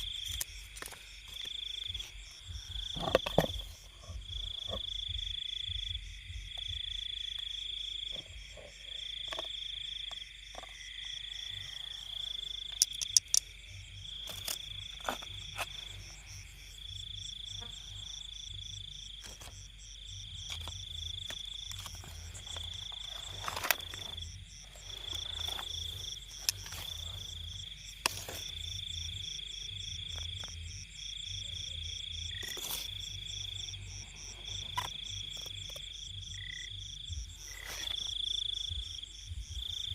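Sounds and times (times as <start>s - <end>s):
fast high-pitched pulsing insects: 0.0s - 39.9s
high trilling frogs: 0.0s - 39.9s
low pulsing drone: 1.7s - 9.0s
sharp clicks: 12.8s - 13.5s.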